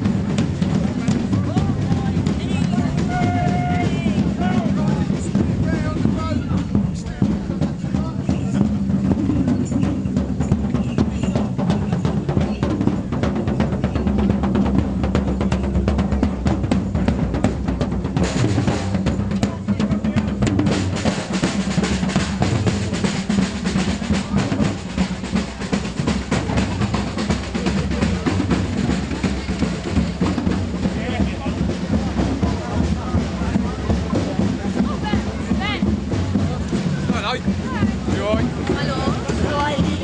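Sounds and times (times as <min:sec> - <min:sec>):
bass drum beats: 0:00.0 - 0:40.0.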